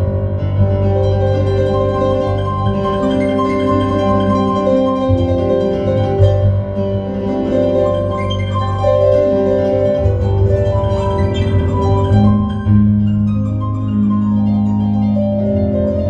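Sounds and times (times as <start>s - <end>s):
improvised piano music: 0.0s - 16.0s.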